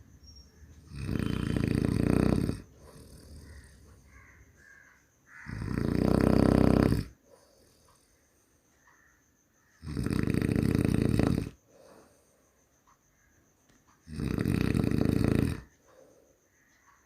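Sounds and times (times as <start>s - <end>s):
person snoring: 0.9s - 4.0s, 5.5s - 8.0s, 9.8s - 12.2s, 14.1s - 15.7s.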